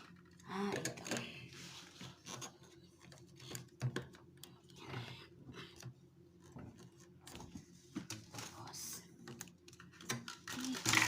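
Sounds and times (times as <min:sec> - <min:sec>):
packaging rustle: 0:10.0 - 0:11.0.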